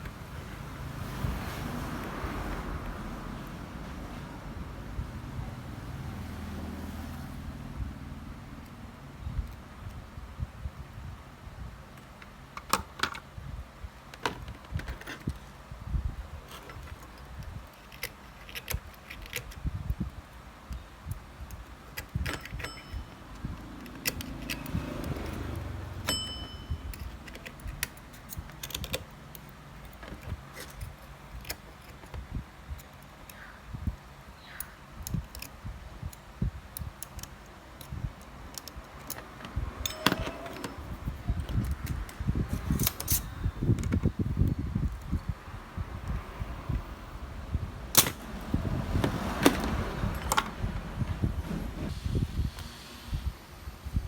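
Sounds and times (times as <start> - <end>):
metal parts clinking: 21.6 - 32.2, 37.0 - 44.0.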